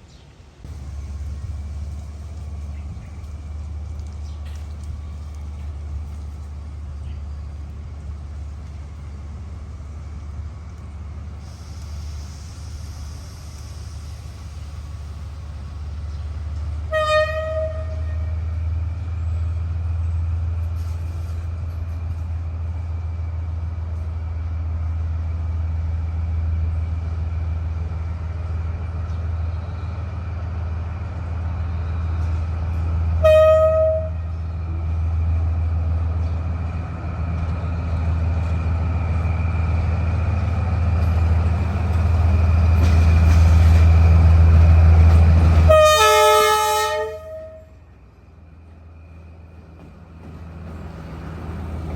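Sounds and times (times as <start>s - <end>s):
diesel locomotive rumbling: 0.0s - 51.9s
train horn toots: 16.8s - 18.5s, 33.2s - 34.3s, 45.5s - 47.9s.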